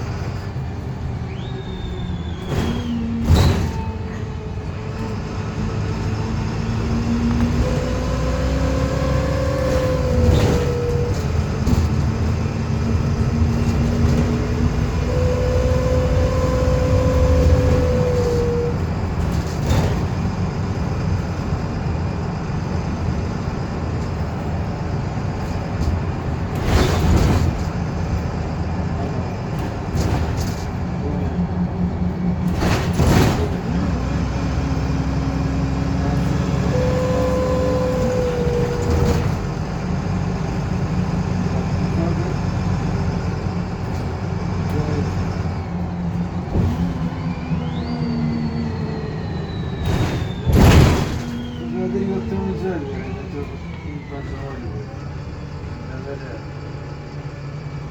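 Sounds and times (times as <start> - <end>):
whirring whine: 0.0 - 21.5, 29.1 - 39.8, 43.2 - 56.3
bus engine and road rumble: 0.0 - 57.9.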